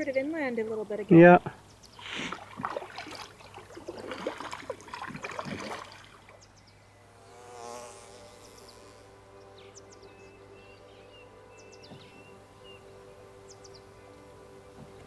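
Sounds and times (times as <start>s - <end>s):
water splashing and dripping: 1.9s - 6.4s
soft sustained chord: 6.3s - 15.0s.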